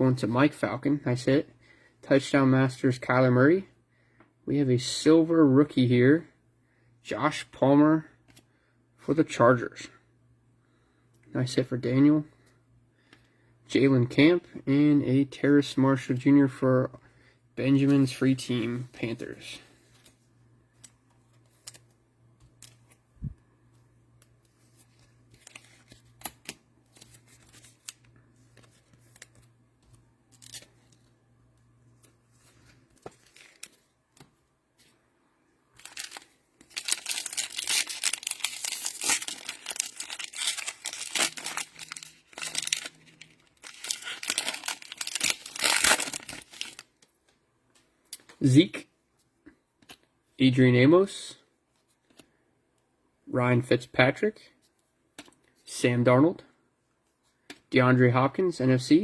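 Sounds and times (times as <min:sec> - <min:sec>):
cellophane wrapper crinkling and tearing: 0:33.1 - 0:34.2, 0:35.8 - 0:47.1.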